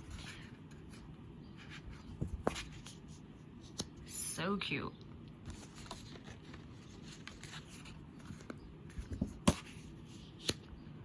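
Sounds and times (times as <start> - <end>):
paper rustling: 5.4 - 10.6.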